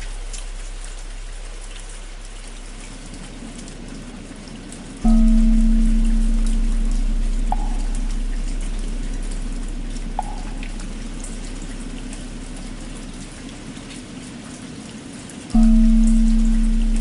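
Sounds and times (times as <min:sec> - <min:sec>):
drops ticking: 0:00.0 - 0:14.2, 0:15.4 - 0:17.0
steady rain: 0:00.0 - 0:17.0
temple bell ringing: 0:05.0 - 0:11.3, 0:15.6 - 0:17.0.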